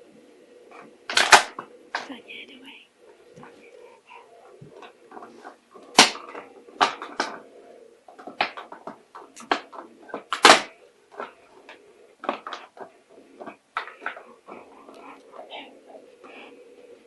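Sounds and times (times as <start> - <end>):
dog noises: 3.1 - 7.5
plastic bottle cracking: 5.9 - 7.4, 8.1 - 11.4.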